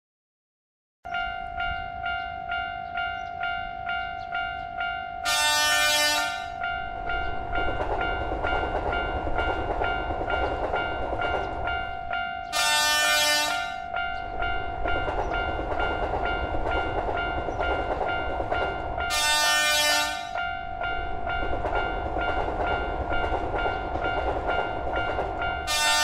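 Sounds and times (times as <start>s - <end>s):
level-crossing bell ringing: 1.1s - 26.0s
passing train rumble: 1.1s - 26.0s
train horn: 5.2s - 6.6s, 12.4s - 13.9s, 19.1s - 20.4s, 25.7s - 26.0s.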